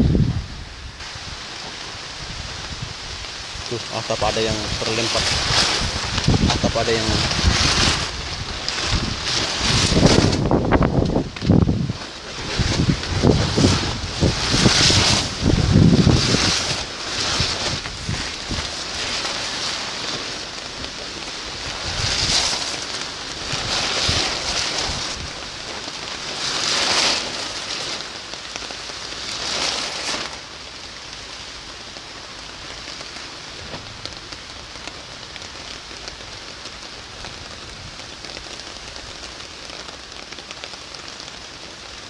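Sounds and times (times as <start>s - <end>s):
strong wind gusting: 0.0s - 25.6s
hiss of rain: 0.0s - 42.0s.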